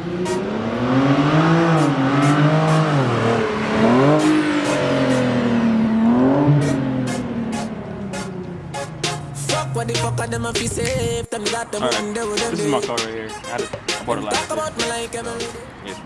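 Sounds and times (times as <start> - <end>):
car engine revving: 0.0 - 11.2.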